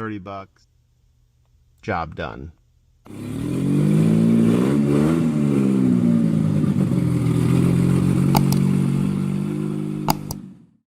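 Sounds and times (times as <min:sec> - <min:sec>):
car engine revving and idling: 0:03.1 - 0:10.8
quick clicks: 0:08.3 - 0:08.7, 0:10.0 - 0:10.4.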